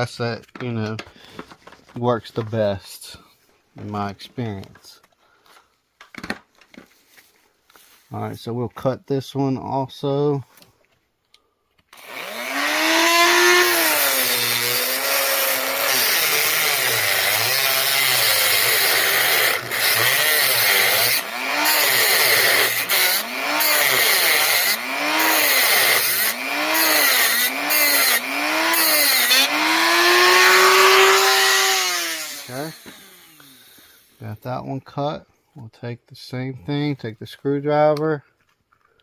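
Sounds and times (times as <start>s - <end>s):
rotary tool grinding copper ring: 12.0s - 34.2s.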